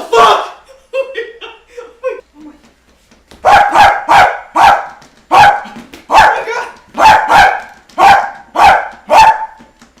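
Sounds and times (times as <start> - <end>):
dog barking: 3.4 - 9.6.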